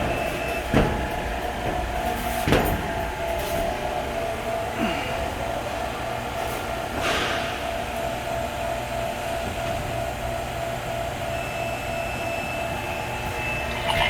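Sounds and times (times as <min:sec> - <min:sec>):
mechanical drone: 0:13.4 - 0:14.0.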